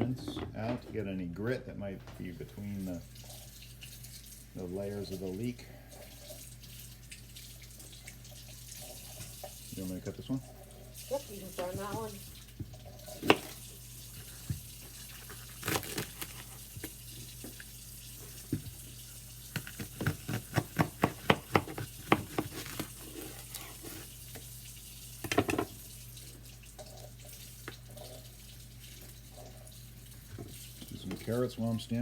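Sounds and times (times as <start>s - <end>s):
knife chopping on cutting board: 13.2s - 13.6s, 19.5s - 24.1s
tap running into sink: 25.2s - 25.8s.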